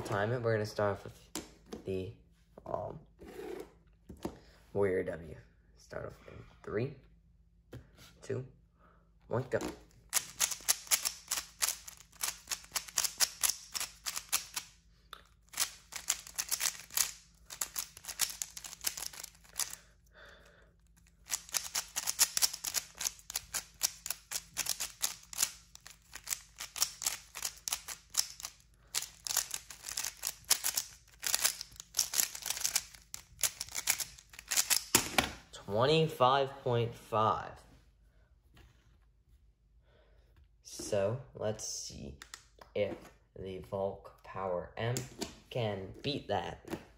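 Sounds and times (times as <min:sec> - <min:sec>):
plastic puzzle cube clicking: 0:10.1 - 0:14.7, 0:15.4 - 0:19.8, 0:21.3 - 0:34.9.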